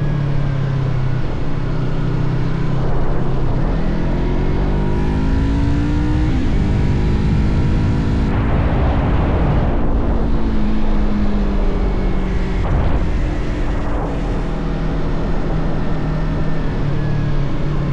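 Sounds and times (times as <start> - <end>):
motorcycle engine accelerating: 0.0 - 17.9
wind and road noise rumble: 0.0 - 17.9.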